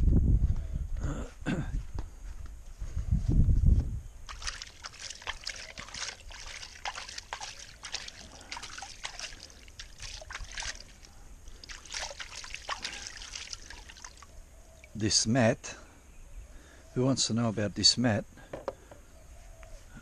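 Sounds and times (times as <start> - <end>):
water sloshing and splashing: 4.3 - 15.0.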